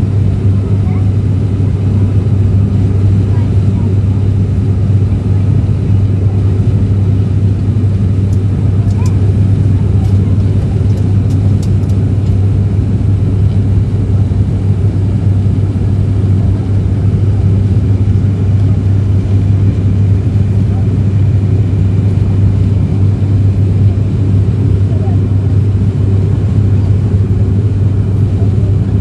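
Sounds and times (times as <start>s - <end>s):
propeller engine drone in cabin: 0.0s - 29.0s.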